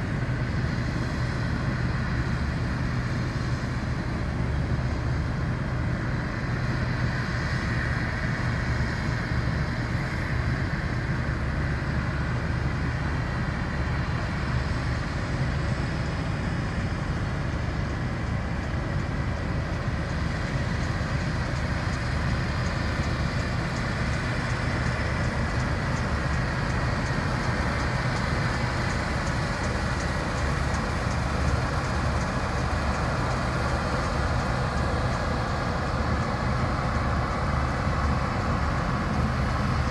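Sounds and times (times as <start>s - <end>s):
combine harvester drone: 0.0s - 39.9s
faint rapid ticking: 17.2s - 39.9s.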